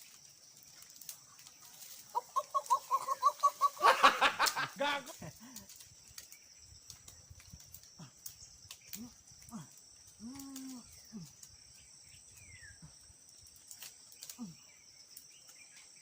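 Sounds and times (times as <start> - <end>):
insects droning: 0.0 - 16.0
faint clicks: 5.4 - 11.6, 13.3 - 15.6.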